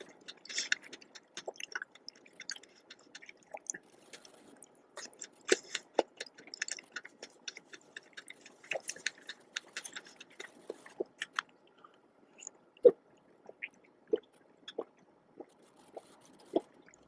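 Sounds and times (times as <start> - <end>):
wet chewing: 0.0 - 17.0
mouth clicks: 5.0 - 11.5.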